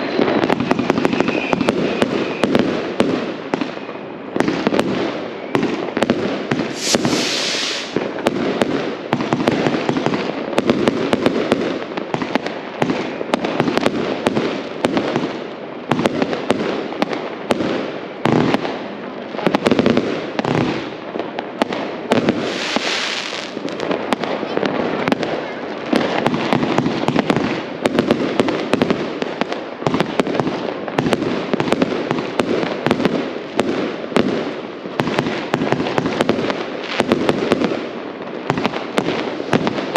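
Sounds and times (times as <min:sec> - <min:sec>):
fireworks bangs and crackles: 0:00.0 - 0:39.9
high hissing burst: 0:06.7 - 0:08.0, 0:22.4 - 0:23.5.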